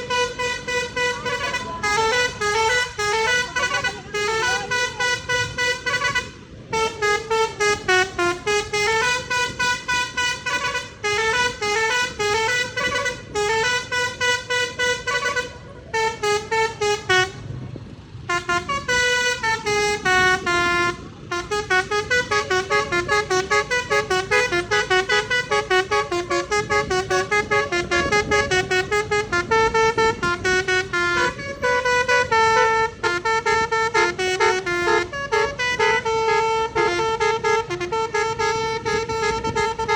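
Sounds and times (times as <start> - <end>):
multi-note bus air horn tune: 0.0 - 17.6, 18.2 - 39.9.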